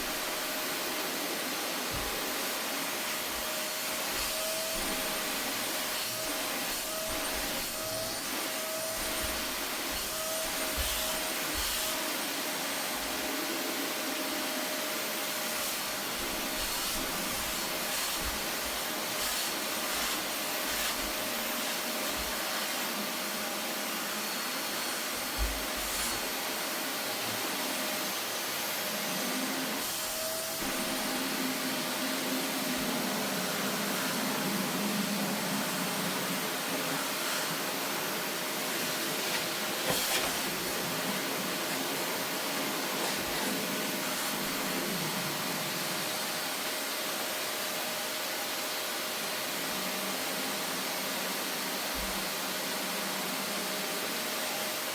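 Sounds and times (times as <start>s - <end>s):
vacuum cleaner running: 0.0s - 54.9s
nozzle brushing and knocking: 3.3s - 12.0s, 15.6s - 22.7s, 39.0s - 40.8s.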